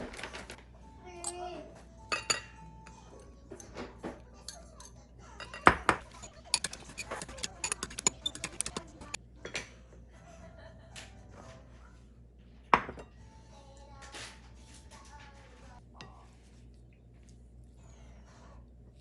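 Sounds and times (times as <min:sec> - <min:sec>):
utensils clinking on dishes: 0:00.0 - 0:09.8.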